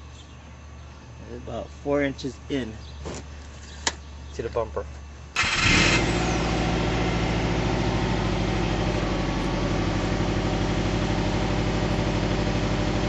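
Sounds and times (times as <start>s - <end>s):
car engine idling: 5.4s - 13.0s.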